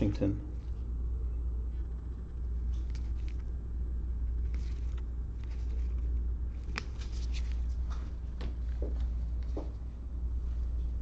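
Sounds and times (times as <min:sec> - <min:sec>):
steady low hum: 0:00.0 - 0:11.0
trading cards clicking and rustling: 0:02.2 - 0:03.6, 0:04.4 - 0:09.5.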